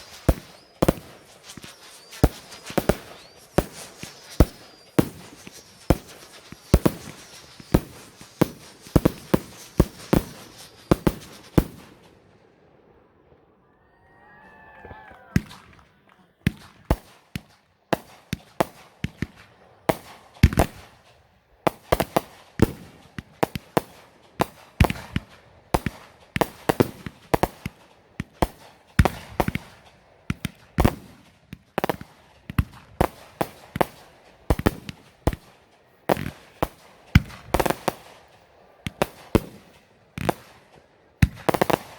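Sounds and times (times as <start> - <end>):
fireworks banging: 0.0 - 13.5, 15.4 - 41.9.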